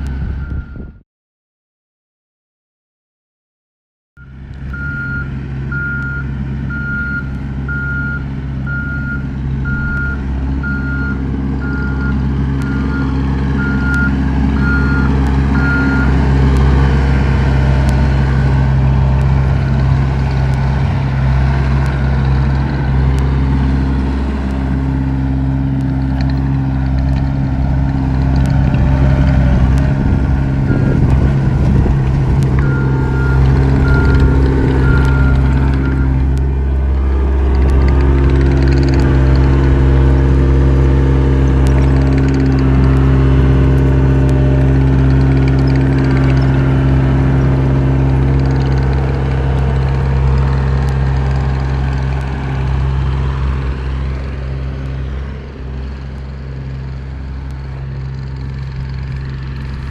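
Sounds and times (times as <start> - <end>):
diesel engine running: 0.0 - 1.0, 4.2 - 59.9
backup alarm beeping: 32.6 - 36.4.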